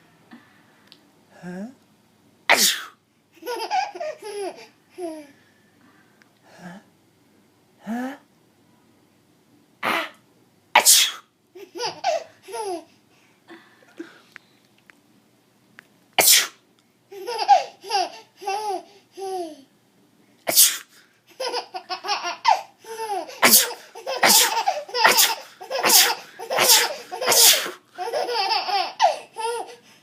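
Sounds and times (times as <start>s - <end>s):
person sneezing: 2.5s - 3.0s, 9.8s - 10.2s, 10.8s - 11.3s, 16.2s - 16.6s, 20.5s - 21.0s, 23.3s - 27.9s.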